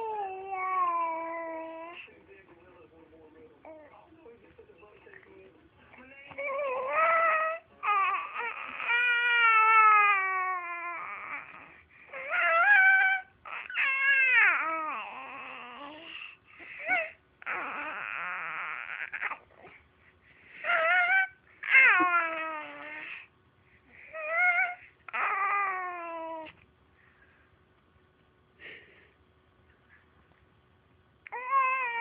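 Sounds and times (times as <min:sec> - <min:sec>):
baby crying: 0:00.0 - 0:02.0, 0:06.4 - 0:19.5, 0:20.6 - 0:23.2, 0:24.1 - 0:26.5, 0:31.3 - 0:32.0.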